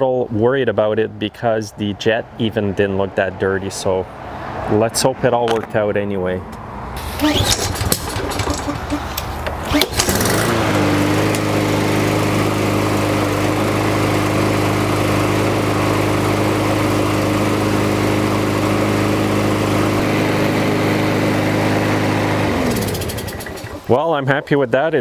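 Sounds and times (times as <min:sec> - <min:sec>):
lawnmower engine running: 0:05.5 - 0:05.7, 0:07.0 - 0:24.0.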